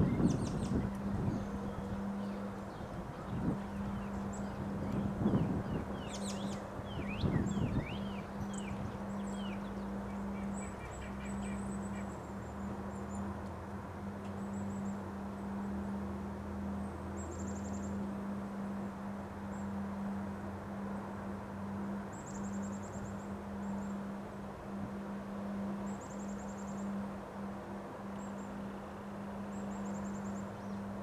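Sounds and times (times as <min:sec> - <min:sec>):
wind buffeting microphone: 0:00.0 - 0:09.5
steady low hum: 0:00.0 - 0:10.5
birds chirping: 0:00.0 - 0:11.7.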